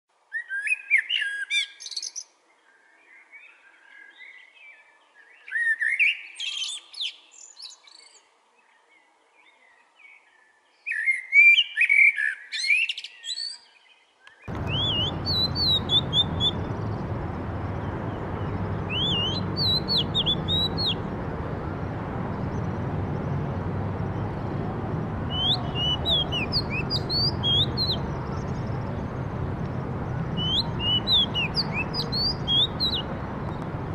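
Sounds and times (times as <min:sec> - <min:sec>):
blackbird singing: 0:09.4 - 0:33.9
low background noise: 0:13.9 - 0:33.9
thin high bird chirps: 0:14.5 - 0:21.2, 0:25.3 - 0:29.1, 0:30.1 - 0:33.6.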